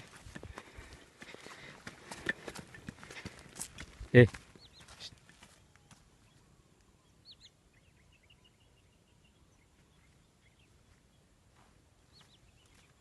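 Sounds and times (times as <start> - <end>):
faint bird chirps: 4.1 - 13.0.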